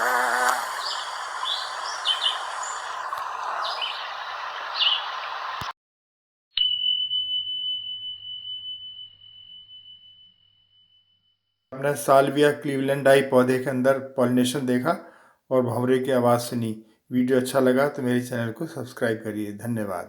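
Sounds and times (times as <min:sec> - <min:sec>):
high bird chirps: 0:00.6 - 0:05.7
high bell-like ding: 0:06.6 - 0:11.4.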